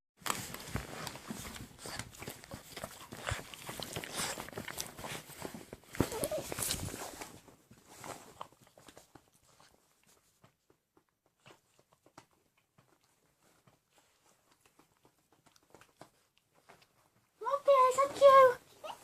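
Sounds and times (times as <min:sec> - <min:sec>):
pet scuffling and rustling: 0:00.2 - 0:19.0.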